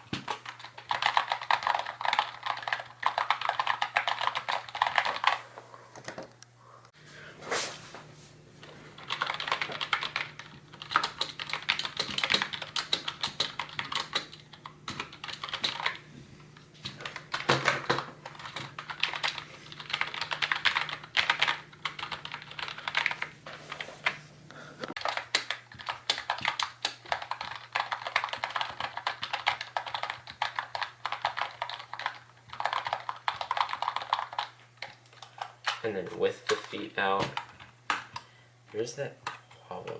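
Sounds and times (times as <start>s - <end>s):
keyboard keys clacking: 9.0s - 16.0s.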